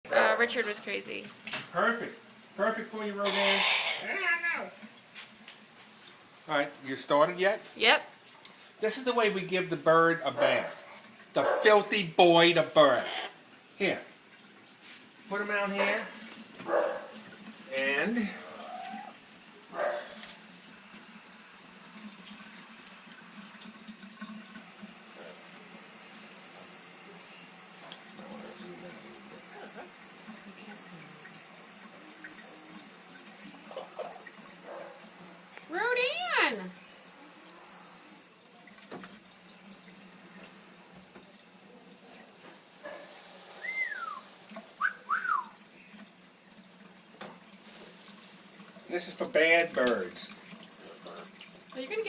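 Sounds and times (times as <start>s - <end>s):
parrot whistling: 3.3s - 4.4s, 43.6s - 45.6s
tap water running into sink: 10.8s - 52.0s
tap running faintly: 37.9s - 43.0s
water splashes: 41.8s - 52.0s.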